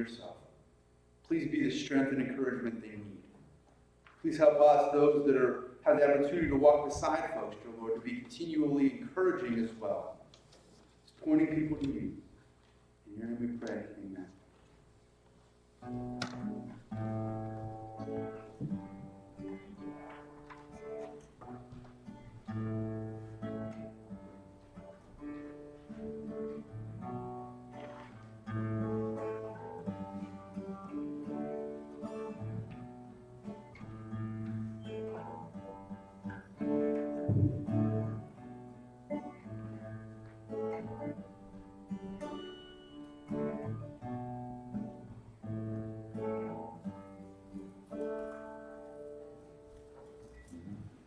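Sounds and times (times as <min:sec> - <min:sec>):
acoustic guitar chords: 0:15.0 - 0:51.0
low thud: 0:37.3 - 0:37.9.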